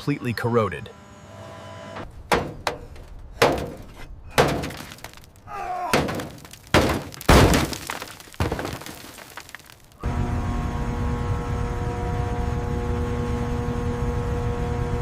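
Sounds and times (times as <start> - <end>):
sharp cracking knocks: 2.3 - 9.8.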